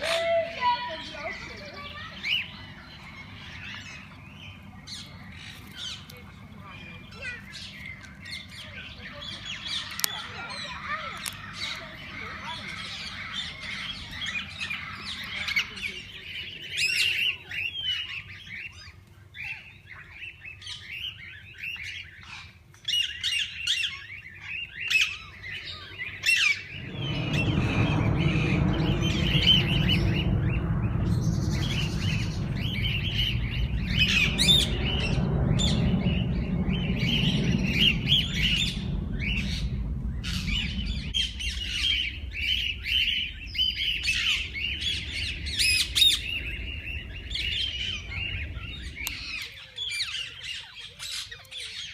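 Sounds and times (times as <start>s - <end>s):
parakeets chirping and squawking: 21.6s - 51.9s
loud low rumbling: 25.4s - 50.8s.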